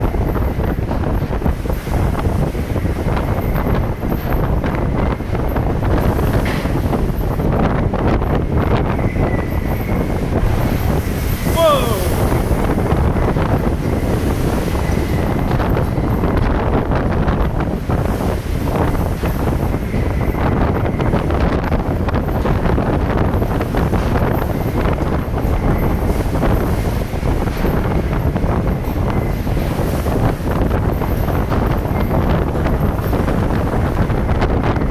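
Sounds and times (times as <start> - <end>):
wind buffeting microphone: 0.0 - 34.9.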